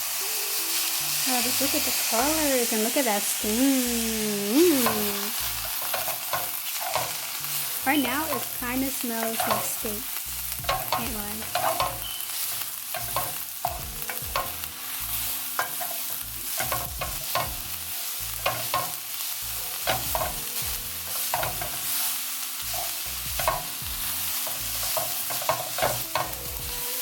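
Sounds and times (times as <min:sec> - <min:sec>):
vegetables sizzling in a pan: 0:00.0 - 0:27.0
utensil scraping against pan: 0:04.8 - 0:26.4.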